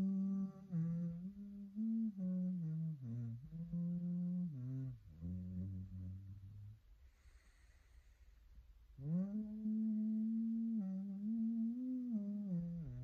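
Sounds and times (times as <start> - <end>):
person humming: 0.0 - 6.8, 9.0 - 13.0.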